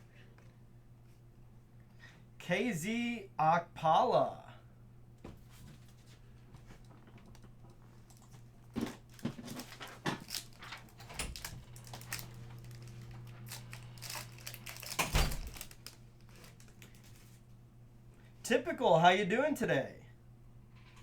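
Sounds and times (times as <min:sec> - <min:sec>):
steady low hum: 0:00.0 - 0:21.0
cards clicking and rustling: 0:06.8 - 0:17.4.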